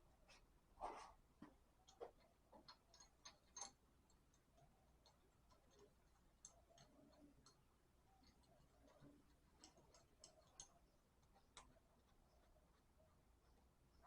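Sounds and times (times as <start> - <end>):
small metal parts clicking: 2.6 - 12.2.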